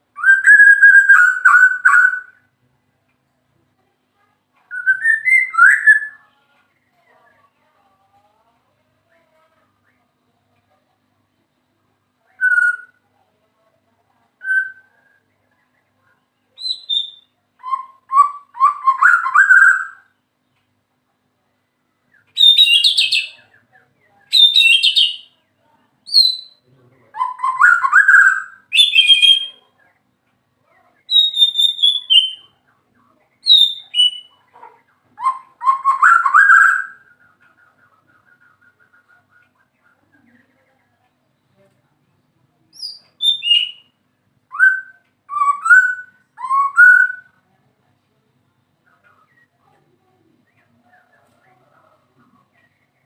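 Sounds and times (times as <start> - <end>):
bird singing whistled phrases: 0.2 - 2.4, 4.7 - 6.3, 12.3 - 13.0, 14.4 - 15.3, 16.6 - 20.1, 22.1 - 23.5, 24.3 - 25.4, 26.1 - 26.6, 27.2 - 29.6, 31.1 - 32.5, 33.4 - 34.4, 35.2 - 37.1, 42.8 - 47.4.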